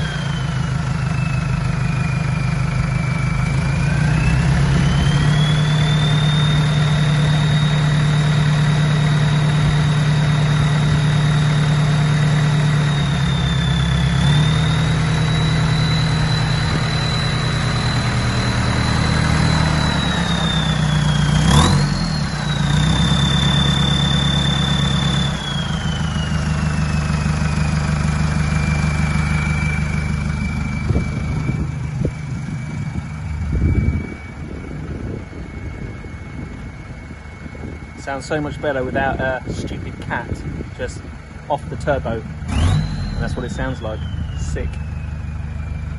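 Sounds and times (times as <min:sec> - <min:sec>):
high turbo whistle: 0:00.0 - 0:41.4, 0:42.0 - 0:45.9
van engine rumble: 0:00.0 - 0:45.9.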